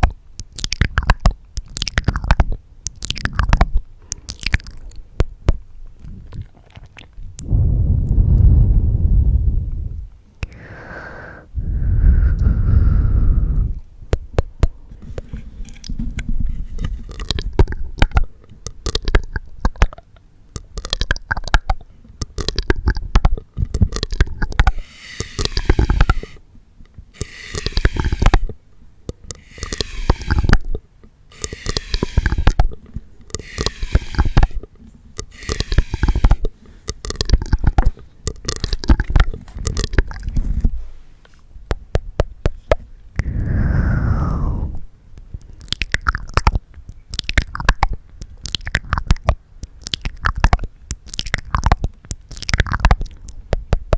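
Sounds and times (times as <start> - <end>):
long wet mouth noises: 0.0 - 5.0, 6.0 - 14.8, 16.8 - 26.4, 27.1 - 40.7, 43.2 - 53.9
wet tongue clicks and smacks: 0.4 - 5.0, 17.1 - 24.7, 36.9 - 40.3, 45.4 - 53.9.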